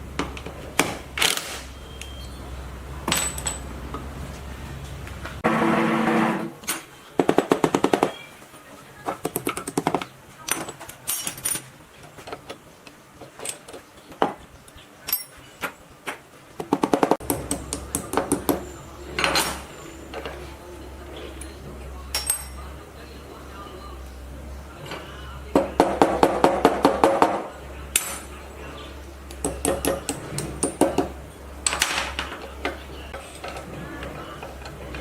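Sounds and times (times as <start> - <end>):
metal knocks and clinks: 2.0 - 4.1, 9.2 - 11.7, 16.7 - 20.5, 22.1 - 22.7.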